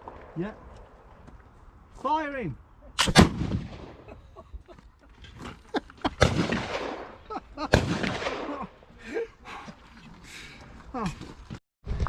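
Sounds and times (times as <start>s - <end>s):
shotgun shots: 3.0s - 4.1s, 6.2s - 8.7s.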